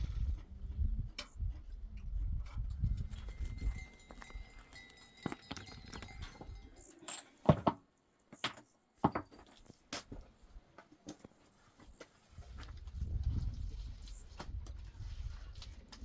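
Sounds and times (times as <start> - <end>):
hard objects clinking: 3.0 - 7.8.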